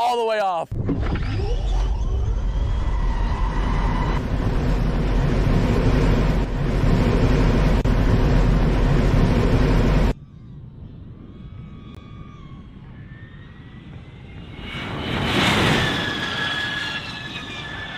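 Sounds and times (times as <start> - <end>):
vehicle rushing at speed: 13.5 - 17.9.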